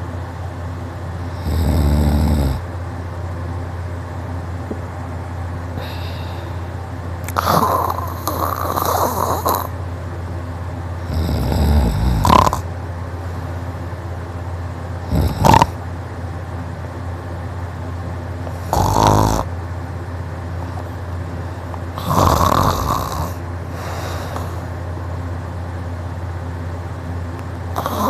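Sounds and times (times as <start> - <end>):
steady low hum: 0.0 - 28.0
man snoring loudly: 1.3 - 2.6, 7.3 - 9.7, 11.0 - 12.6, 15.0 - 15.8, 18.6 - 19.5, 22.0 - 24.6, 27.8 - 28.0
sharp snort: 15.1 - 15.8.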